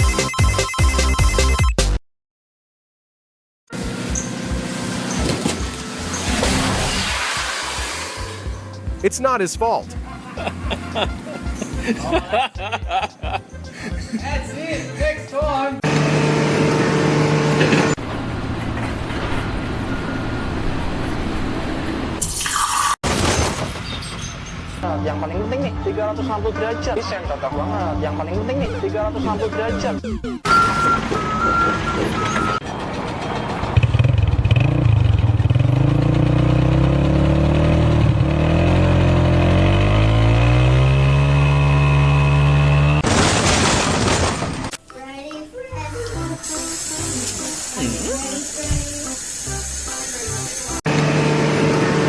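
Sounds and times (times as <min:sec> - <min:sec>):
heavy engine humming: 0:03.8 - 0:06.2, 0:15.8 - 0:22.2, 0:30.5 - 0:43.0, 0:50.9 - 0:52.0
even mechanical noise: 0:15.8 - 0:22.4.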